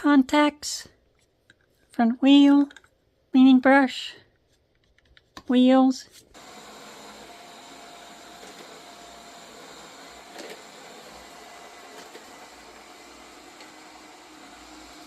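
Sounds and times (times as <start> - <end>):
robot vacuum whirring: 6.4 - 15.0.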